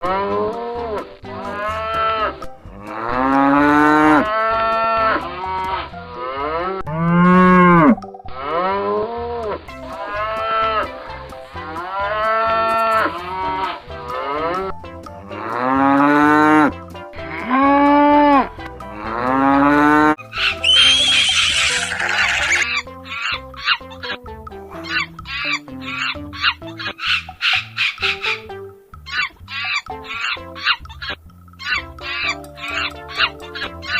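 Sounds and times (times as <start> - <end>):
cattle mooing: 0.0 - 10.8, 15.3 - 20.2, 20.8 - 22.7.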